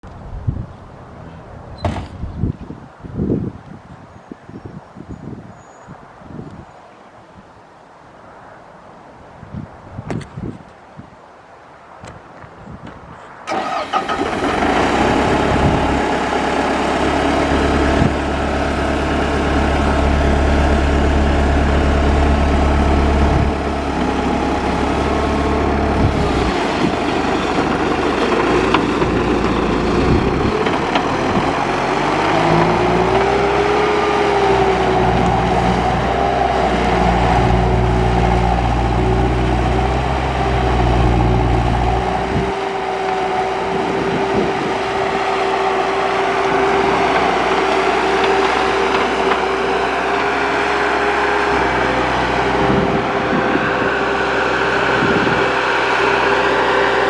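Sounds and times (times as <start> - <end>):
diesel engine starting and running: 13.5 - 57.0.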